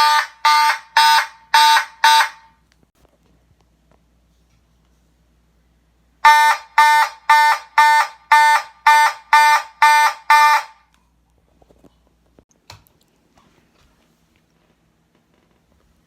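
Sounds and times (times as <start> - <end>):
fire alarm horn blasts: 0.0 - 2.6, 6.2 - 10.9.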